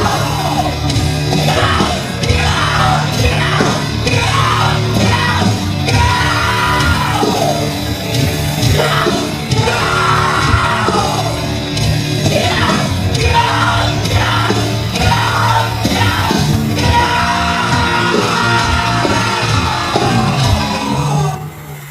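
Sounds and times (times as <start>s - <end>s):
rock band with heavy guitars: 0.0s - 21.9s
shouted vocals: 0.0s - 21.9s.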